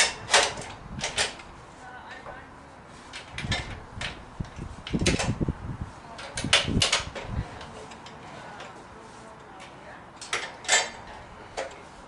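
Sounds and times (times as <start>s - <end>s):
metal sawhorse clacking and rattling: 0.0s - 1.5s, 3.1s - 5.4s, 6.2s - 8.8s, 10.2s - 11.8s.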